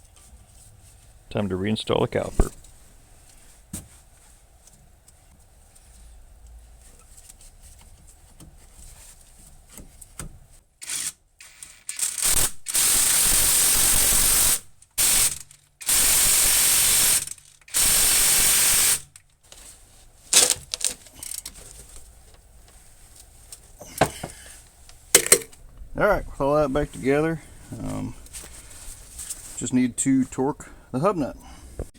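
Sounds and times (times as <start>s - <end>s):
pneumatic tool bursts: 10.8s - 19.1s
metal parts knocking: 25.2s - 25.6s.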